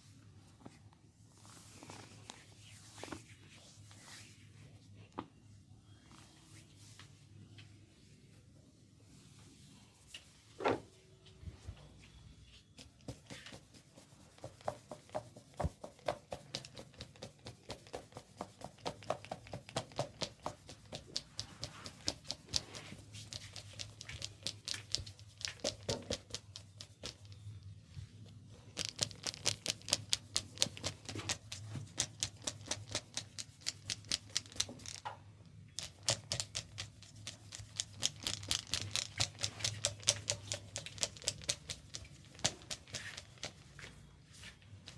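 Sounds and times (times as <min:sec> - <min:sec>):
hands patting and slapping head: 0:12.8 - 0:27.5, 0:35.7 - 0:44.0.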